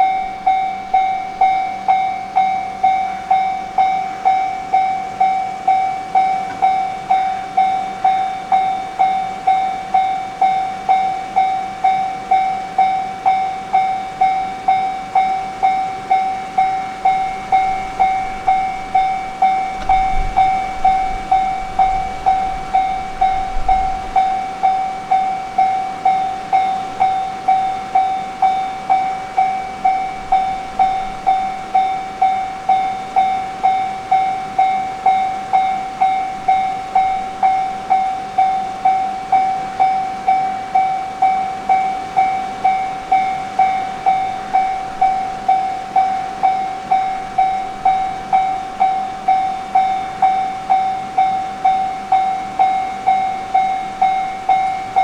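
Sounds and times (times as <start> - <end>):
level-crossing warning bell: 0.0 - 55.0
low rumble: 17.0 - 25.6.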